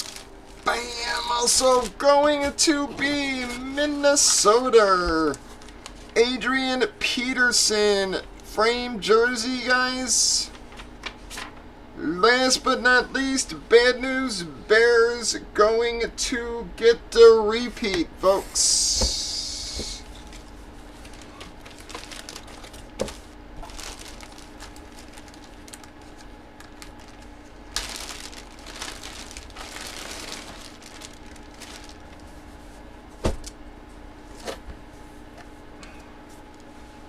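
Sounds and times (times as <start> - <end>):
plastic packaging crinkling: 0.0 - 4.4, 5.2 - 6.2, 20.3 - 32.5
faint steady hum: 0.0 - 37.0.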